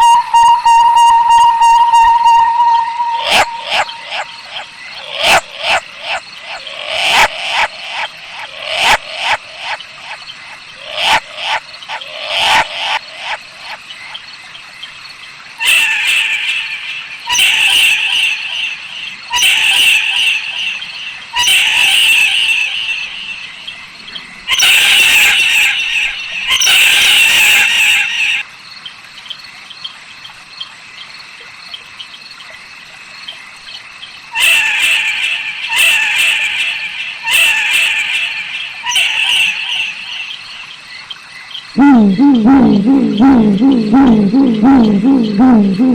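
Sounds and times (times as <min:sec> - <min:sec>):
owl harsh screeches: 0:00.0 - 0:04.7, 0:15.6 - 0:23.7, 0:24.5 - 0:28.4, 0:34.4 - 0:40.5
owl chattering calls: 0:00.0 - 0:09.8, 0:15.6 - 0:28.4, 0:34.4 - 0:40.8, 0:41.8 - 0:45.9.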